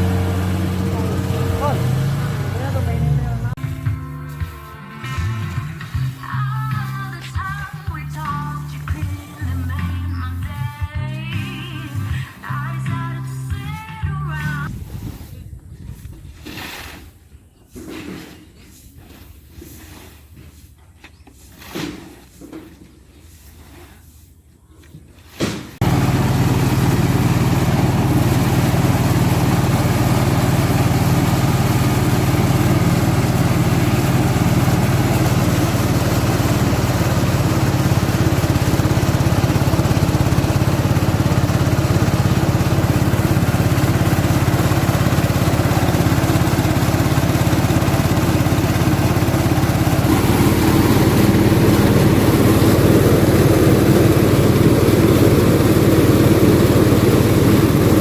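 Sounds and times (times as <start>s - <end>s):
farm machinery engine humming: 0.0s - 10.6s, 25.8s - 58.0s.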